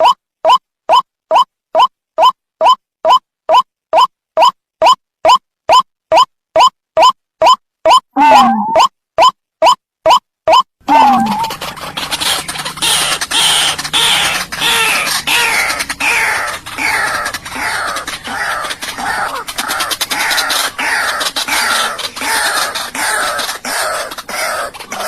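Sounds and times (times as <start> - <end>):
bird harsh croaking calls: 10.9 - 25.0.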